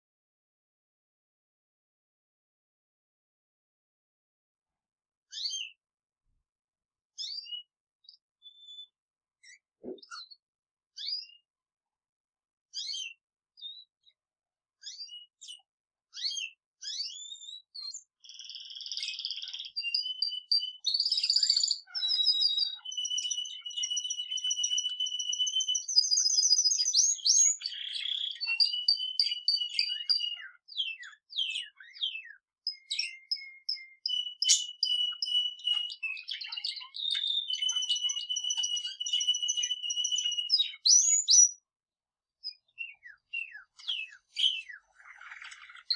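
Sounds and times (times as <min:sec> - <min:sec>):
canary singing trills: 0:05.3 - 0:05.8, 0:07.2 - 0:11.5, 0:12.7 - 0:14.2, 0:14.8 - 0:41.7, 0:42.4 - 0:45.9
budgerigar chirping: 0:12.8 - 0:13.1, 0:16.2 - 0:17.5, 0:18.2 - 0:41.6, 0:43.0 - 0:45.9.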